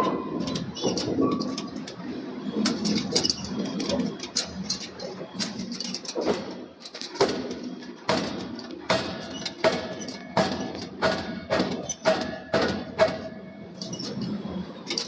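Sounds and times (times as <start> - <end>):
hammer striking steel on anvil: 8.9 - 13.2.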